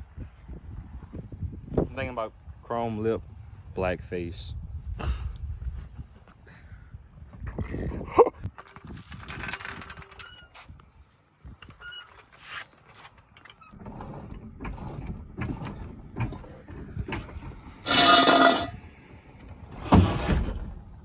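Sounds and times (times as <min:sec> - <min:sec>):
hand tools rattling and clicking: 0:17.9 - 0:18.7.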